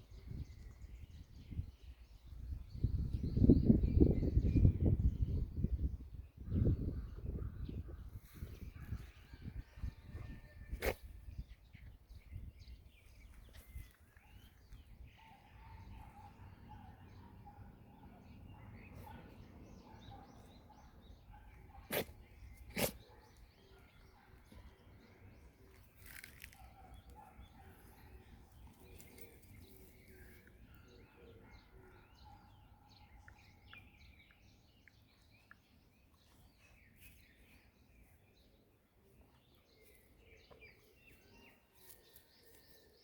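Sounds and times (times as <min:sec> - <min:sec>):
dog sneezing: 0:22.7 - 0:23.0.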